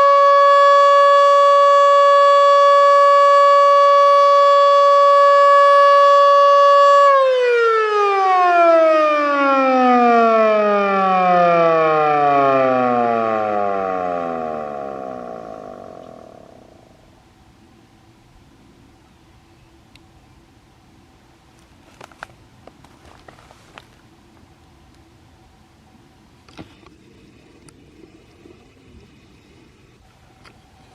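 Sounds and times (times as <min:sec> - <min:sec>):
electromechanical siren: 0:00.0 - 0:17.2.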